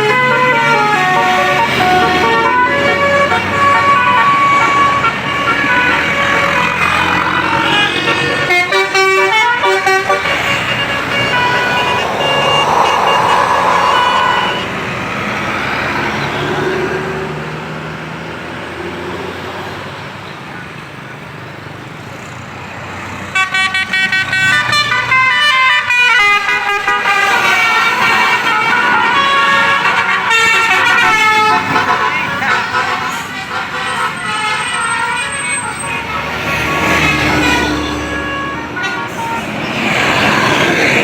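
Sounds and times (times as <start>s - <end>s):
musical bus horn: 0.0s - 12.2s, 23.3s - 40.9s
engine and traffic noise: 0.0s - 41.0s.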